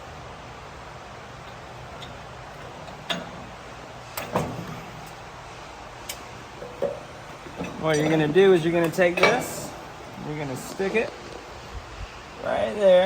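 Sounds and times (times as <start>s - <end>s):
steady low hum: 0.0s - 12.8s
sharp metallic clicks and knocks: 1.4s - 11.5s.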